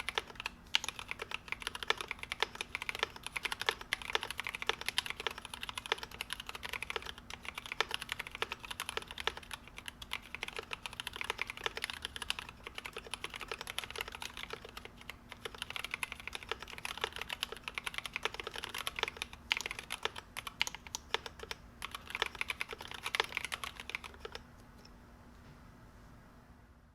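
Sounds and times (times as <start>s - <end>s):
fast typing on mechanical keyboard: 0.0s - 24.5s.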